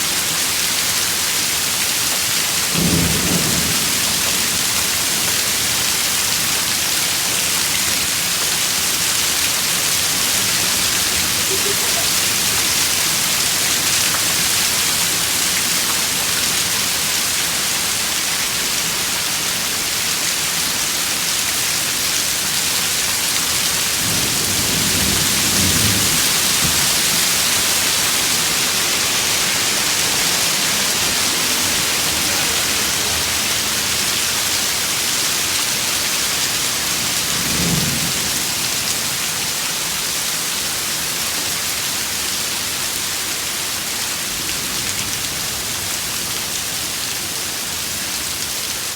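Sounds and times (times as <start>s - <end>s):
heavy rain hammering down: 0.0s - 48.9s
low rumble of thunder: 2.7s - 5.9s, 23.7s - 28.7s, 36.8s - 39.2s.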